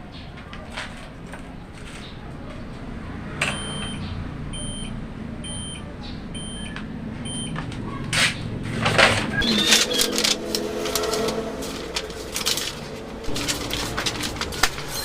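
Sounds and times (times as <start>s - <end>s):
electronic buzzer beeps: 3.5s - 4.0s, 4.6s - 5.8s, 6.4s - 7.6s.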